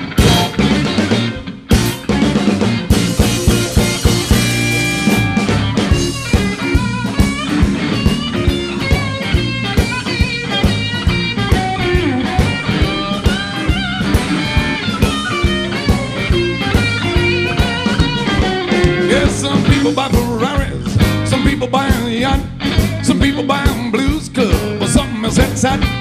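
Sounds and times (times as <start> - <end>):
bass: 0.0 - 26.0
drum kit beat: 0.0 - 26.0
electric guitar lead with bent notes: 0.0 - 26.0.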